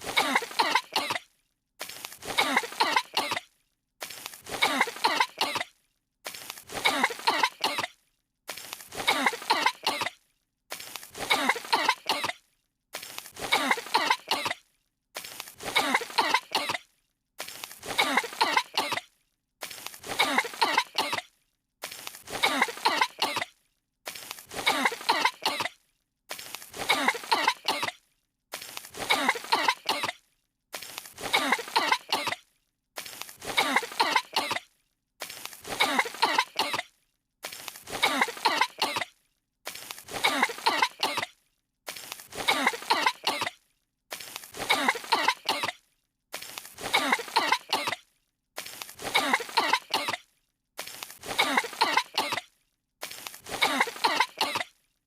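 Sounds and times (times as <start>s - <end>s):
cartoon girls coughing: 0.0s - 1.3s, 2.2s - 3.6s, 4.5s - 5.8s, 6.7s - 8.0s, 8.9s - 10.2s, 11.2s - 12.5s, 13.4s - 14.6s, 15.6s - 16.9s, 17.8s - 19.2s, 20.0s - 21.3s, 22.3s - 23.6s, 24.5s - 25.8s, 26.7s - 28.0s, 29.0s - 30.2s, 31.2s - 32.4s, 33.4s - 34.7s, 35.6s - 36.9s, 37.9s - 39.1s, 40.1s - 41.3s, 42.3s - 43.6s, 44.6s - 45.8s, 46.8s - 48.0s, 49.0s - 50.3s, 51.2s - 52.5s, 53.4s - 54.7s.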